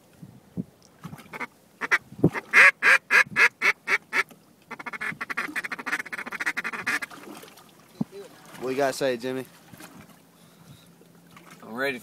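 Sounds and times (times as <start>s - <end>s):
duck call quacks: 1.4s - 7.1s.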